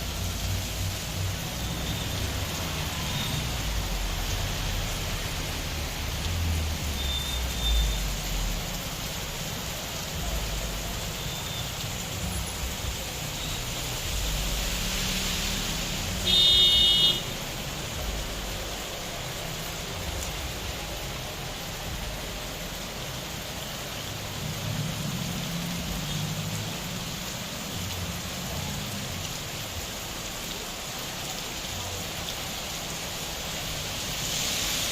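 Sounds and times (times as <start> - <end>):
steady rain hissing: 0.0 - 34.9
traffic on a wet road: 0.0 - 34.9
vehicle horn: 16.2 - 17.4.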